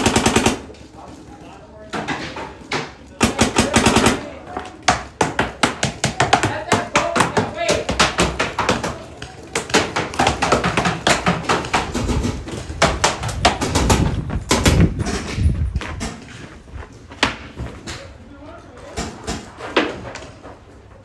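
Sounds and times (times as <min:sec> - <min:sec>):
paintball markers firing: 0:00.0 - 0:00.8
handling noise: 0:00.0 - 0:18.2.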